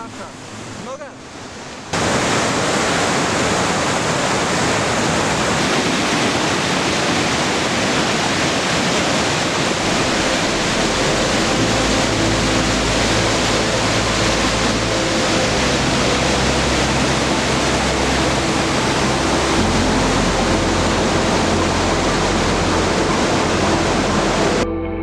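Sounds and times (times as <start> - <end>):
waterfall roaring: 0.0 - 24.6
low rumble: 9.7 - 25.0.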